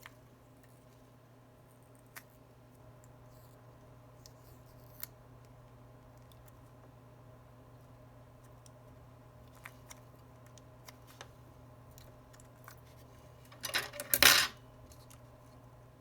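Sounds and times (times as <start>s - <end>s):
metal parts clattering: 13.5s - 14.6s.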